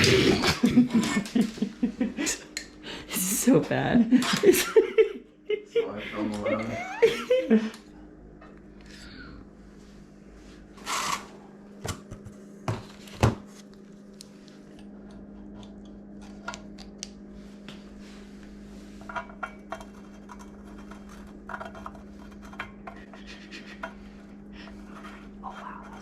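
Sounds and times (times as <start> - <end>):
low hum: 6.3 - 26.0.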